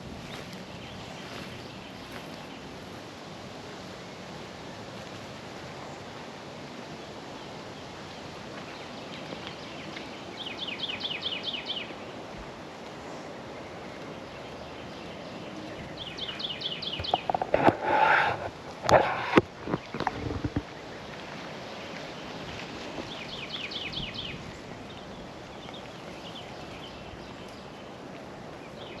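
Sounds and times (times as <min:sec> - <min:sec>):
outdoor background hiss: 0:00.0 - 0:29.0
songbird trilling: 0:09.5 - 0:12.1, 0:13.8 - 0:17.4, 0:23.1 - 0:28.0.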